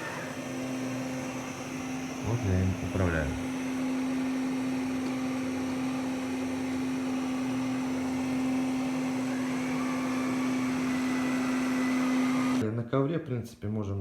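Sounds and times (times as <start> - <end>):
robot vacuum motor hum: 0.0 - 12.6.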